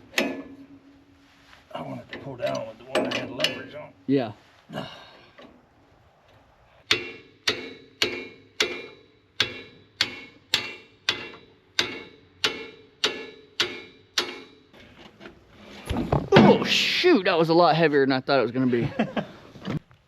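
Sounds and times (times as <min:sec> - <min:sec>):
metal-on-metal hammer blows: 0:06.8 - 0:14.7.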